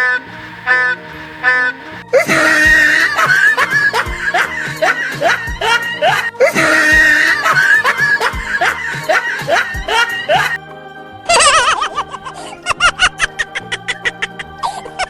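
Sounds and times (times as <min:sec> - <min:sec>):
upbeat background music: 0:00.0 - 0:15.0
laughter-like sounds: 0:02.1 - 0:10.6.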